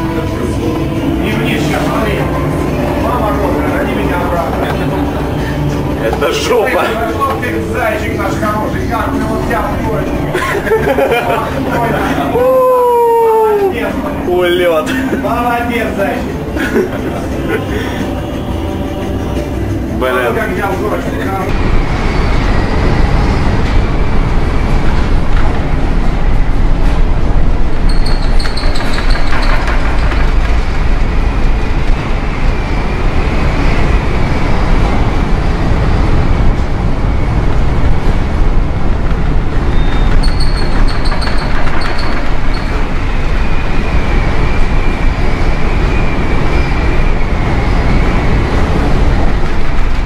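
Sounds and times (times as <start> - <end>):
heavy waves: 0.0 - 27.9
wind rumbling: 0.0 - 50.0
faint high whistle: 39.7 - 41.4.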